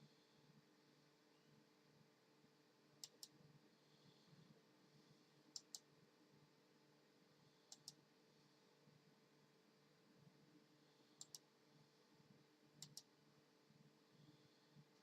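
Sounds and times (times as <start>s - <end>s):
faint hum: 0.0s - 15.0s.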